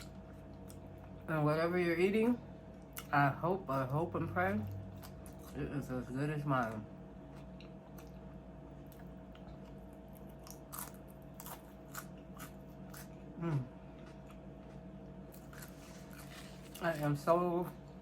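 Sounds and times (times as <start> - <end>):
crunching and chewing food: 0.0 - 1.3, 2.6 - 18.0
steady low hum: 0.0 - 18.0
person humming mm: 13.4 - 13.7.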